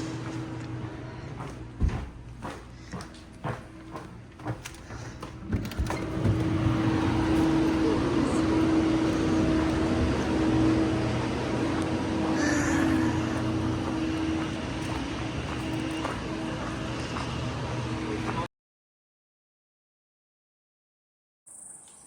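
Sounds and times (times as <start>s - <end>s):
car engine and road noise: 5.9s - 12.4s.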